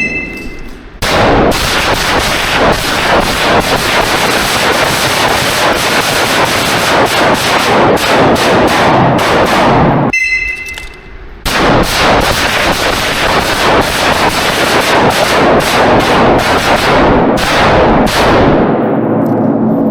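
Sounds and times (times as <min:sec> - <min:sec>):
high ringing tone: 0:00.0 - 0:00.8, 0:10.1 - 0:11.3
rapid rifle gunfire: 0:01.0 - 0:10.1, 0:11.4 - 0:18.8.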